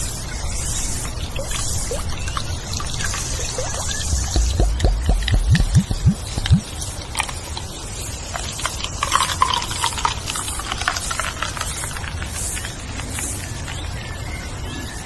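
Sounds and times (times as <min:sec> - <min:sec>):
birds chirping: 0:00.8 - 0:06.8
loud low thuds: 0:03.6 - 0:06.7.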